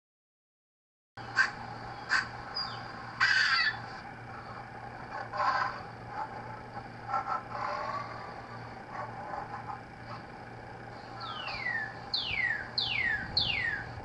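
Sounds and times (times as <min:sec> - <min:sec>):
steady low hum: 0:01.2 - 0:14.0.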